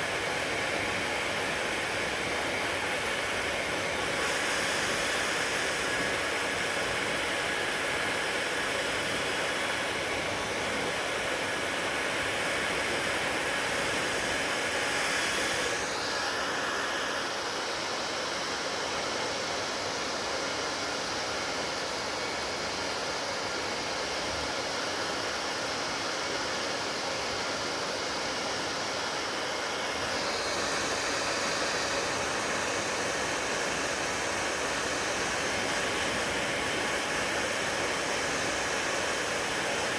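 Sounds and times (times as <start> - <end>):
hair dryer blowing: 0.0 - 39.9.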